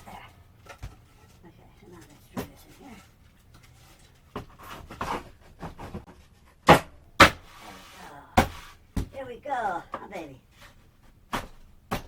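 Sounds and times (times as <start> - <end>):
rustles: 0.0 - 6.6, 7.3 - 11.2
board scraping slide: 7.4 - 8.8.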